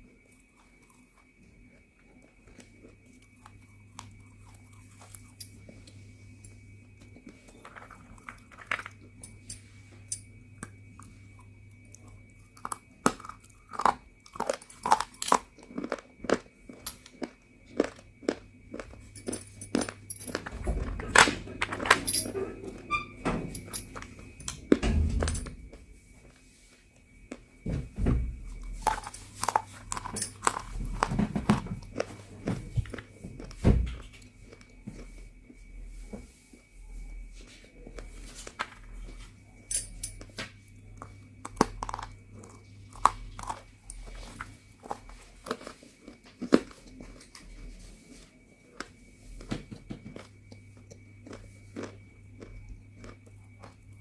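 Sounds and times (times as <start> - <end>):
chewing crunchy clay: 0.3 - 9.3, 10.6 - 21.3, 28.5 - 35.6, 40.1 - 47.7, 48.7 - 54.0.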